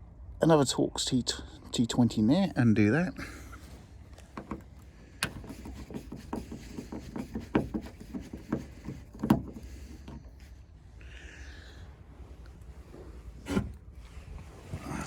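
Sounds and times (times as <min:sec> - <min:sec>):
tool clicks and light knocks: 0:04.1 - 0:10.5.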